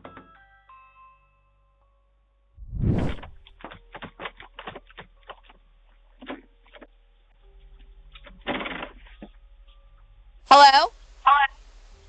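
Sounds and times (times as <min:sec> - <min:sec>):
loud thump: 0:02.6 - 0:03.4.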